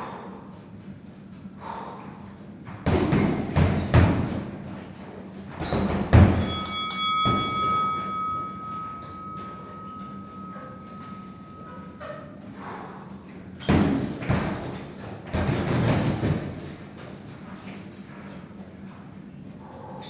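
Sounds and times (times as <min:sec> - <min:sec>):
steady ringing tone: 0:02.2 - 0:18.4
punches thudding into bag: 0:02.8 - 0:06.6, 0:13.6 - 0:17.1.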